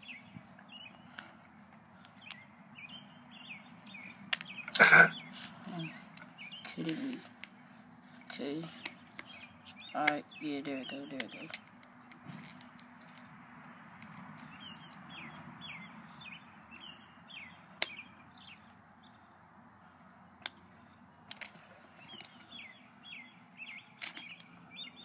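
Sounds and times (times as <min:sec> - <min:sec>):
small bird chirping: 0:00.0 - 0:01.3, 0:02.0 - 0:07.4, 0:08.0 - 0:11.8, 0:14.1 - 0:25.0
sharp tool clicks: 0:17.8 - 0:18.0.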